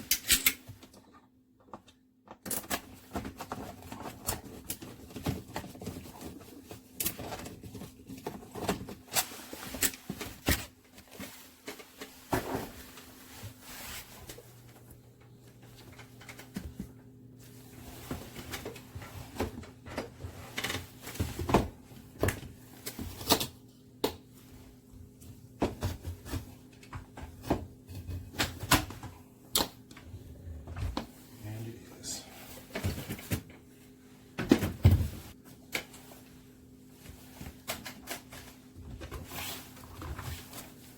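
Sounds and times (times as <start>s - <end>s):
steady low hum: 12.3s - 37.6s.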